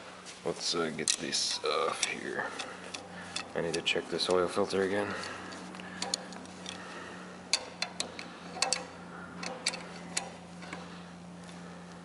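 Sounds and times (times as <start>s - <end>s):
hand tools clicking against metal: 1.0s - 6.8s, 7.5s - 10.9s.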